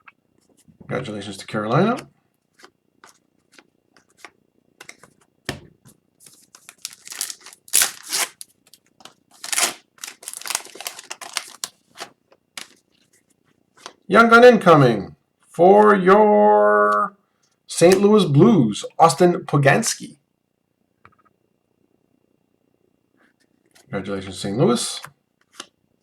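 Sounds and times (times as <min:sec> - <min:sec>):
wrapper tearing and crinkling: 0:06.5 - 0:12.8.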